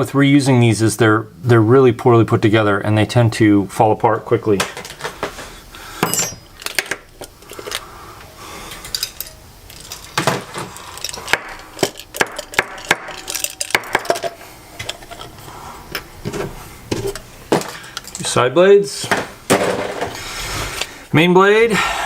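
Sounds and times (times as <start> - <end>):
small parts and tools clattering: 4.6 - 7.9, 8.6 - 18.4, 19.0 - 20.2.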